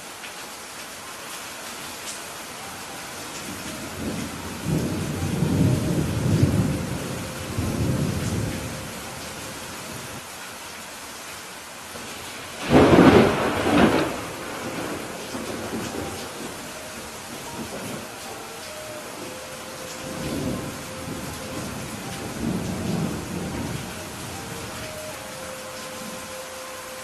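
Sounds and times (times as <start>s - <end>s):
steady rain: 0.0s - 27.0s
thunder rumbling: 3.4s - 10.2s, 12.5s - 26.3s
sharp thunderclap: 12.6s - 16.1s.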